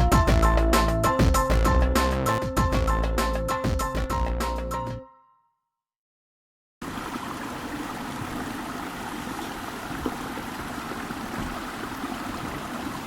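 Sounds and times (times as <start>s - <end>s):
waterfall rushing: 6.8s - 13.0s.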